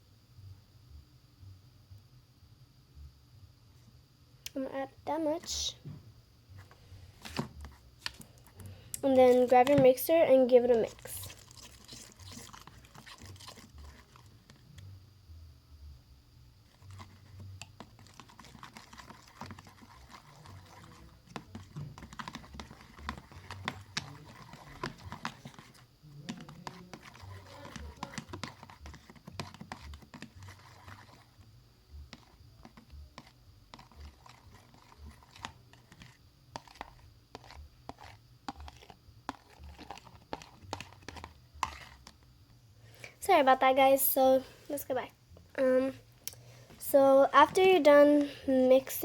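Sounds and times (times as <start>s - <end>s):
utensil stirring in a container: 7.6s - 14.8s, 16.7s - 42.3s.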